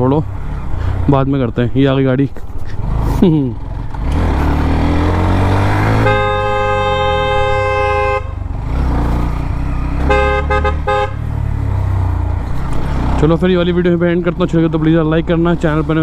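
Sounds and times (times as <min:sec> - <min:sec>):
motorcycle engine running: 0:00.0 - 0:16.0
vehicle horn: 0:05.8 - 0:08.5, 0:10.0 - 0:11.3.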